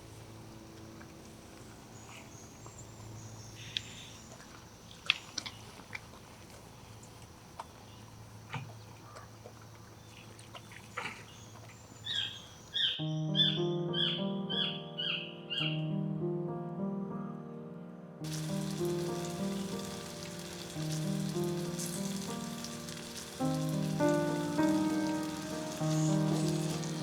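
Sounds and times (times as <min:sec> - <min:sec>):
music: 0:12.9 - 0:27.0.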